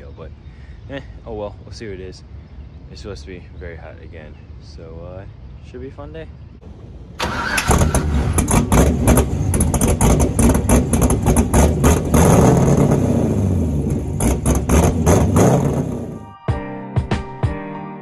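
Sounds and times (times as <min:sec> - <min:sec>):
hot rod engine crackling: 0:07.2 - 0:16.2.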